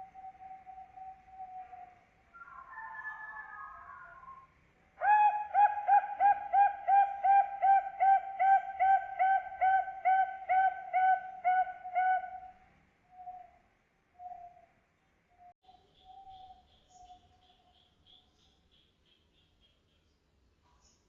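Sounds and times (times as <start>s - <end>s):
dove cooing: 5.0s - 12.5s.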